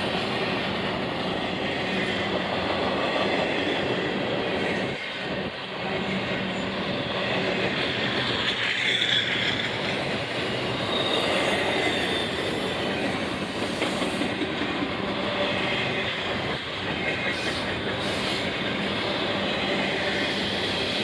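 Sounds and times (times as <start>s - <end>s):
freight train wheels on rails: 0.0s - 21.0s
high wheel squeal: 8.4s - 15.0s.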